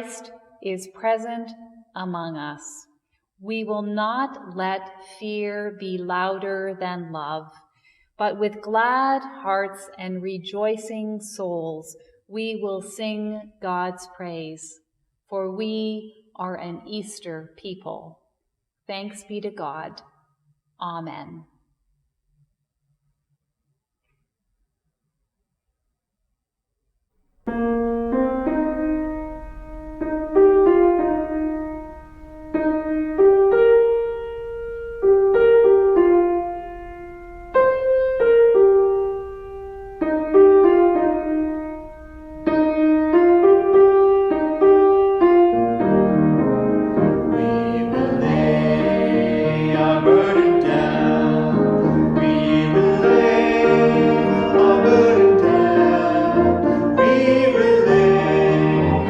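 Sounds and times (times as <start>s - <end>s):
piano playing slow chords: 27.5s - 59.0s.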